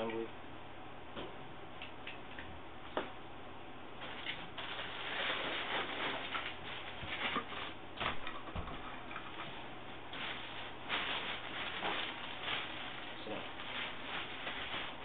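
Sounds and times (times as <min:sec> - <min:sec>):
rustling: 0:04.0 - 0:07.8, 0:08.8 - 0:15.0.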